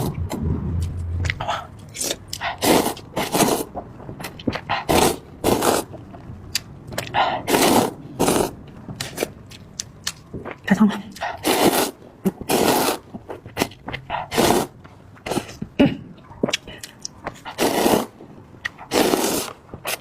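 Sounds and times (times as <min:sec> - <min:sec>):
person slurping noodles: 0:01.3 - 0:03.7, 0:04.5 - 0:06.0, 0:07.0 - 0:09.3, 0:11.2 - 0:15.6, 0:17.4 - 0:20.0.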